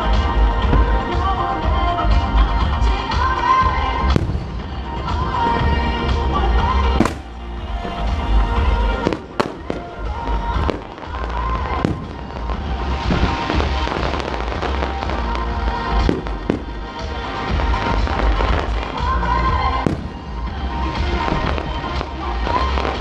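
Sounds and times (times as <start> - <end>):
fireworks bangs and crackling: 0.0 - 23.0
music playing: 0.0 - 23.0.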